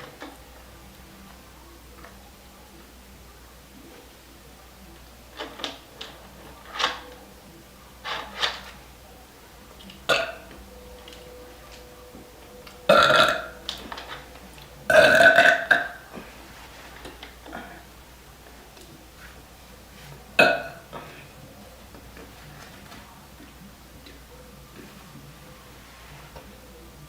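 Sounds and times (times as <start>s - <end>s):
girl burping: 10.1s - 10.4s, 12.9s - 13.6s, 14.9s - 16.3s, 17.5s - 17.8s, 20.4s - 21.3s.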